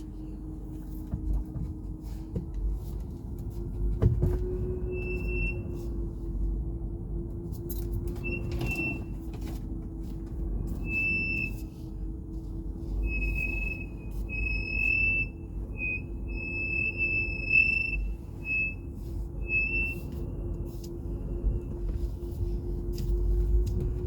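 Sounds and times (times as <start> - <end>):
car brakes squealing: 4.6 - 5.9, 8.1 - 9.2, 10.7 - 11.8, 13.0 - 20.3.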